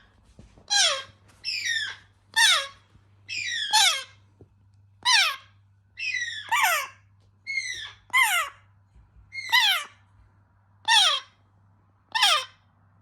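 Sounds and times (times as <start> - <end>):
parrot chicks begging calls: 0.7 - 4.3, 5.0 - 8.7, 9.3 - 10.0, 10.8 - 11.4, 12.1 - 12.6.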